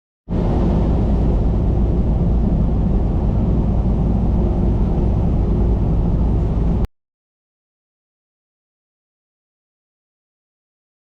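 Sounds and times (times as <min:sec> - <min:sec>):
diesel truck engine rumbling: 0:00.3 - 0:06.9.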